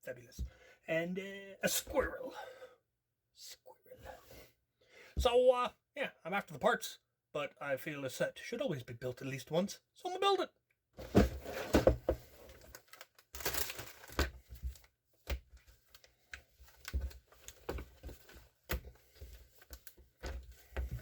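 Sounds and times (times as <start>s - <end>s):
packaging crinkling and tearing: 12.5s - 14.8s.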